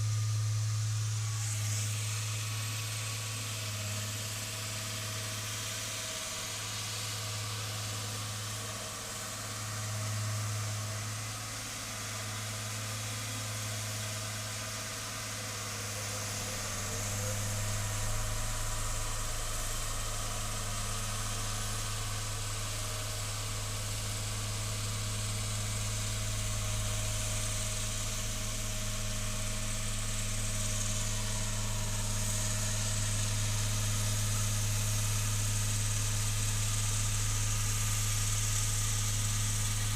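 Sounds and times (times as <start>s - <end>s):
road roller engine humming: 15.6s - 39.9s.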